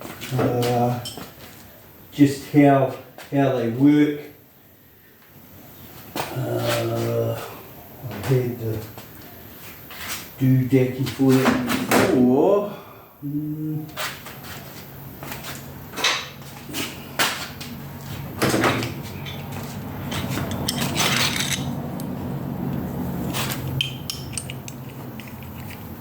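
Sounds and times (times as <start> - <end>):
metal tools clinking on workbench: 19.2 - 22.1, 23.4 - 26.0.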